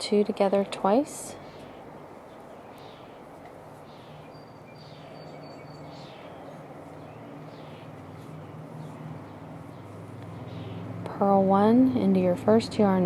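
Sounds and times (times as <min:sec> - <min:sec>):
low steady hum: 0:00.0 - 0:13.0
bird chirping: 0:01.3 - 0:11.1.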